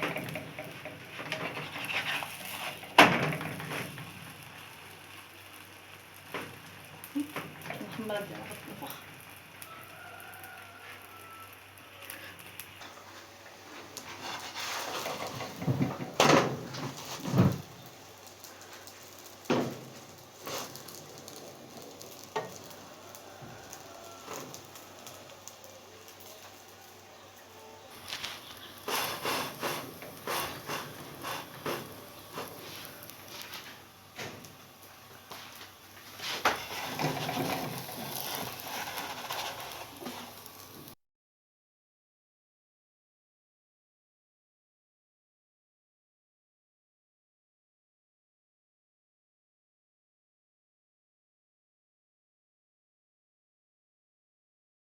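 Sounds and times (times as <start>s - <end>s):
knocks and clatter in a pan: 0.0s - 4.4s, 6.2s - 8.9s, 13.8s - 17.9s, 19.4s - 25.2s, 28.4s - 32.7s, 36.2s - 40.4s
dough sizzling in a pan: 0.0s - 41.0s.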